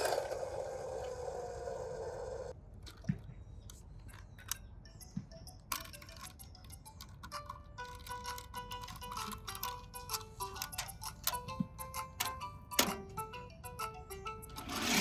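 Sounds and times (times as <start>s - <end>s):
toy car rattling down a slide: 0.0s - 3.0s, 14.6s - 15.0s.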